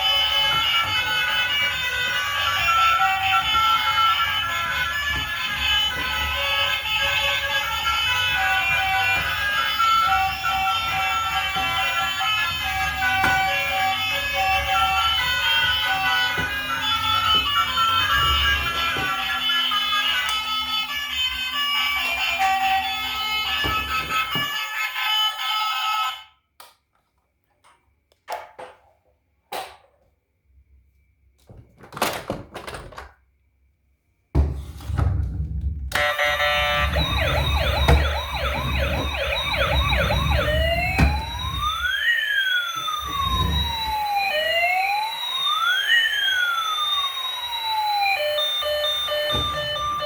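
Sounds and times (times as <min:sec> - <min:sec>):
toy electronic siren: 0:00.0 - 0:26.4, 0:35.9 - 0:50.0
knocks and clicks: 0:35.9 - 0:41.9.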